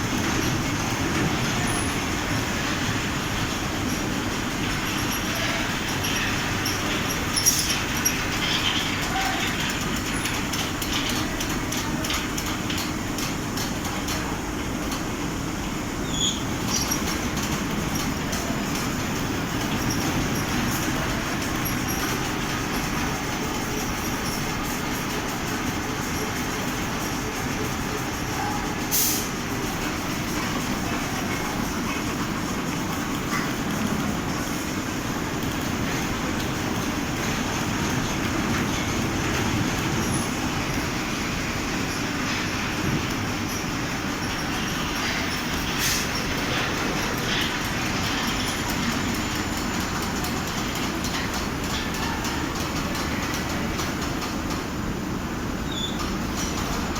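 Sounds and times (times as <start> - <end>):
fabric spreader machine running: 0.0 - 56.9
short hiss: 28.9 - 29.3.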